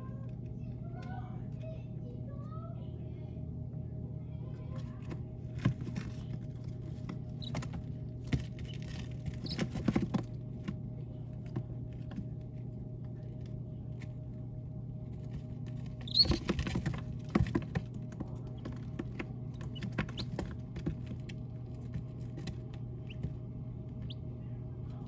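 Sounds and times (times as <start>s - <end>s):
steady low hum: 0.0s - 25.0s
chicks pecking and scratching: 4.7s - 25.0s
chicks peeping: 7.0s - 10.3s, 15.4s - 25.0s.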